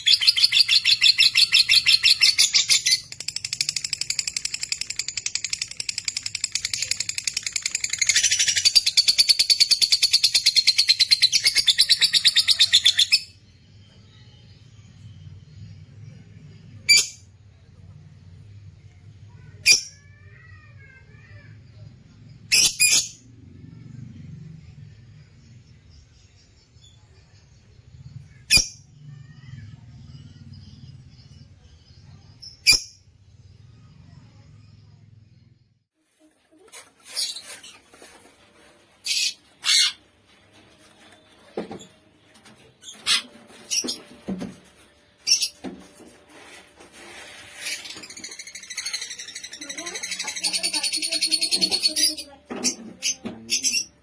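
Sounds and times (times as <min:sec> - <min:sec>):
lovebirds shrill calls: 0:39.0 - 0:40.0
lovebirds twittering: 0:39.0 - 0:40.0, 0:47.2 - 0:54.0.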